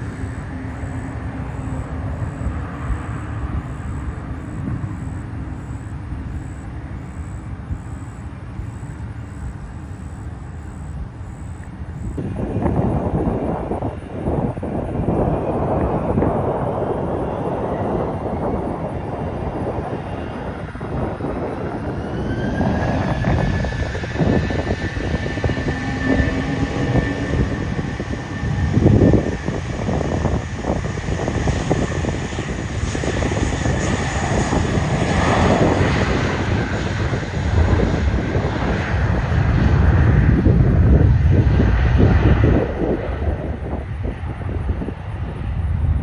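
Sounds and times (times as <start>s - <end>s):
heavy jet engine rumble: 0.0s - 46.0s
jet engine whine: 0.0s - 46.0s.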